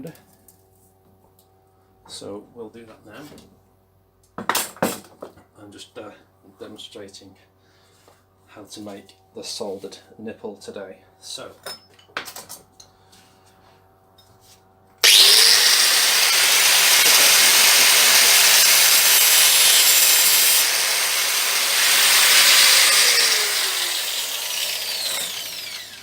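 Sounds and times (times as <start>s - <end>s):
angle grinder cutting cable: 15.0s - 26.0s
grinder winding down whine: 15.0s - 26.0s.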